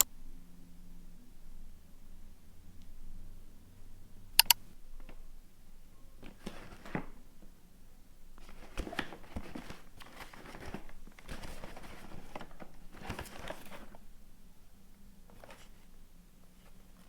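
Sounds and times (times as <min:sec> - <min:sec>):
packaging crinkling and rustling: 0:06.2 - 0:07.3, 0:08.4 - 0:14.0.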